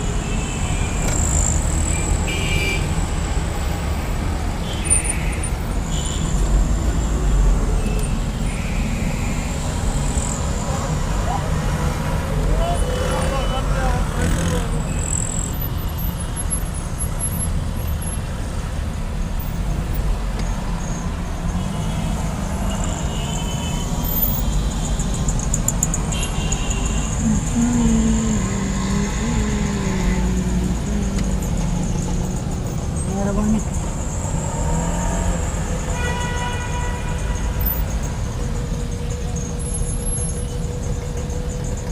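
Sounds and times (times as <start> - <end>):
traffic engines rumbling: 0.0 - 41.9
vehicle horn: 2.3 - 2.9, 26.1 - 27.2, 35.8 - 37.6.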